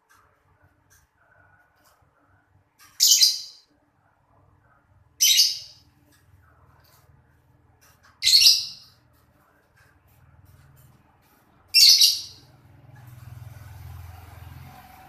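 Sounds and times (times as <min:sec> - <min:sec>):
lovebird high-pitched calls: 0:03.0 - 0:03.7, 0:05.2 - 0:05.8, 0:08.2 - 0:09.0, 0:11.7 - 0:12.5.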